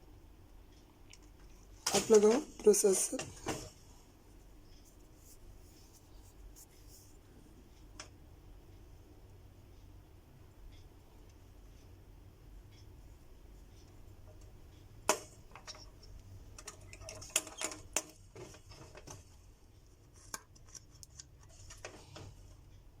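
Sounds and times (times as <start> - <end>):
computer parts clicking and clinking: 15.0 - 19.2.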